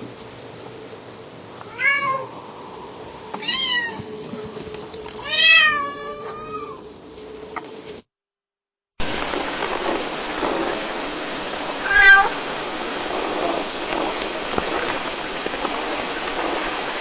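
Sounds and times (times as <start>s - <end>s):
faint steady hum: 0.0s - 8.0s, 9.0s - 17.0s
cat meowing softly: 1.6s - 2.3s, 5.2s - 6.9s, 11.8s - 12.3s.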